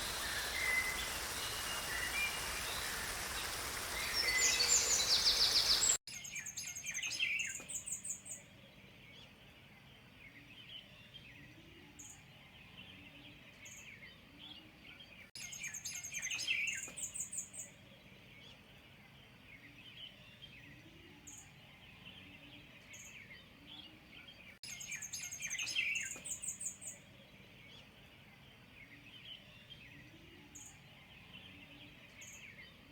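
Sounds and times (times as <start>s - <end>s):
songbirds singing: 0.0s - 32.9s.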